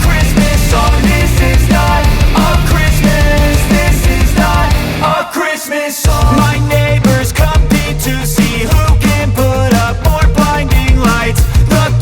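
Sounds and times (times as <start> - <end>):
background music with steady beat: 0.0 - 5.2, 6.0 - 12.0.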